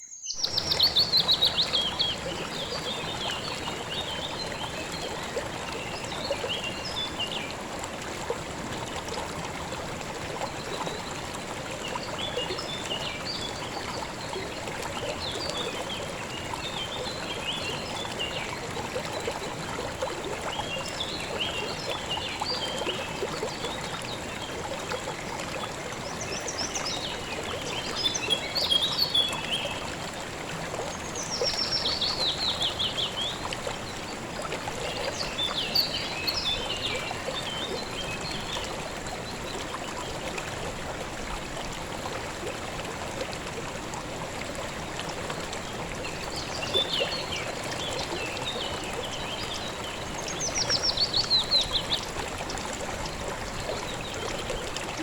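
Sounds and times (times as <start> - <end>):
small birds chirping: 0.0 - 7.2, 26.1 - 29.8, 34.8 - 38.5
river water flowing: 0.4 - 55.0.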